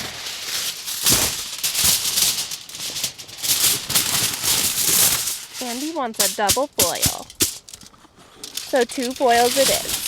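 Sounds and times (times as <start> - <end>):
aluminum foil crinkling: 0.0 - 10.0.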